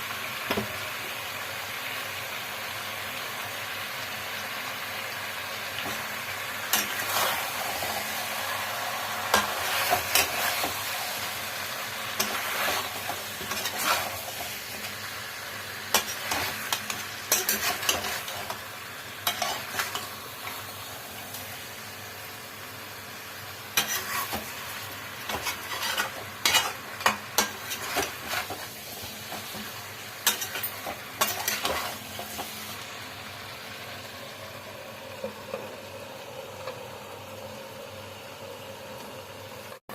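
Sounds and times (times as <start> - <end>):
curry sizzling in a pan: 0.0 - 39.8
spoon scraping and knocking pan: 9.3 - 10.9, 12.2 - 14.9, 15.9 - 18.6, 19.2 - 20.1, 23.8 - 24.6, 25.3 - 32.5.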